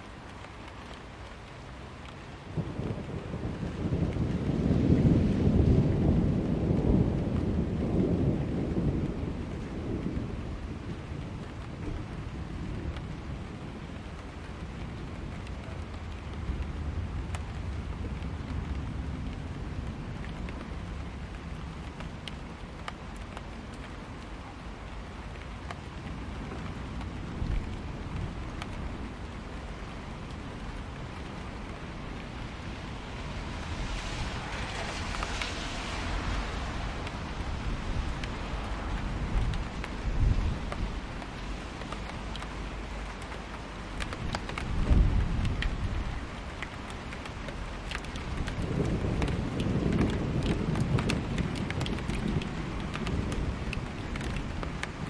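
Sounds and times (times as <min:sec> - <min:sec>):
steady rain: 0:00.0 - 0:55.0
distant thunder rumble: 0:02.5 - 0:14.0, 0:47.9 - 0:55.0
thunder rumbling: 0:02.5 - 0:23.2, 0:24.0 - 0:42.5, 0:43.9 - 0:55.0.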